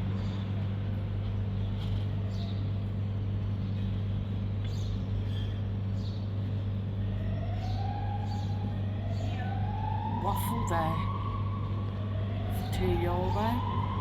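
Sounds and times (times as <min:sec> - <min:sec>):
vending machines humming: 0:00.0 - 0:14.0
siren: 0:07.0 - 0:14.0.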